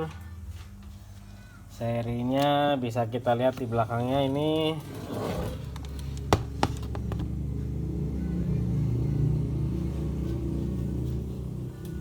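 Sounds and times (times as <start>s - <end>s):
steady low rumble: 5.6s - 12.0s.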